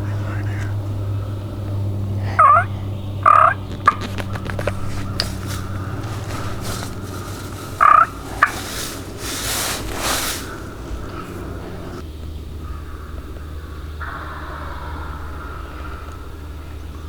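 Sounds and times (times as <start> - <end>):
wild turkey gobbling: 0.0 - 12.0, 12.6 - 17.0.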